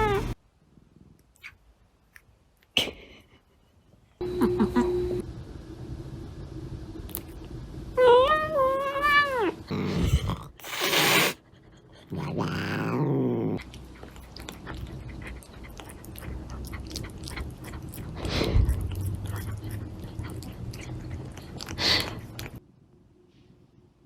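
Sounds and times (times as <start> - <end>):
small pet chewing: 13.6 - 22.6.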